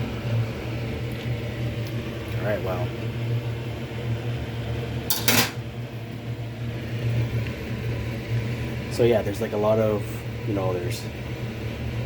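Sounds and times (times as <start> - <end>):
kitchenware clattering: 5.1 - 5.6.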